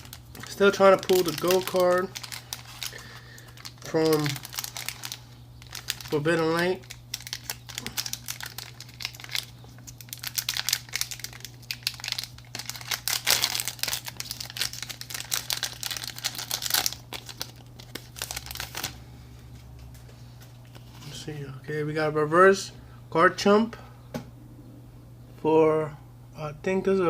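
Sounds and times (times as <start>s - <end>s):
foil wrapper crinkling and tearing: 0.0s - 19.0s
low steady hum: 0.0s - 27.0s.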